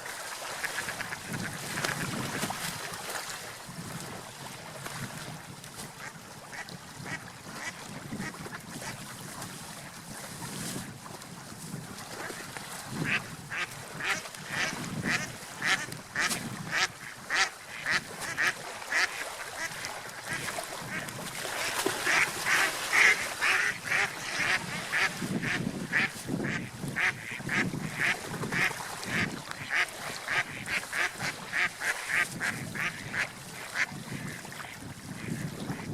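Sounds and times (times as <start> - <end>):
duck quacking: 13.0 - 21.0, 22.0 - 34.4.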